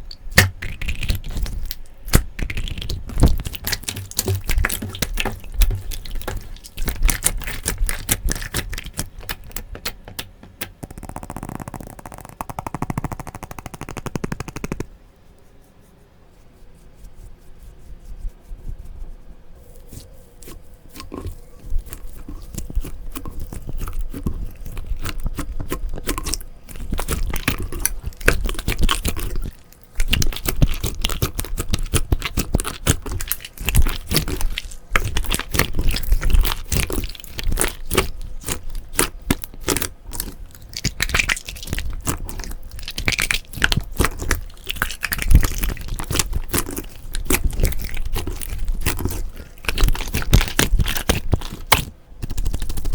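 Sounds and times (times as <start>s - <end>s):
sticky slime clicks and crackles: 0.3s - 14.9s, 21.0s - 52.9s.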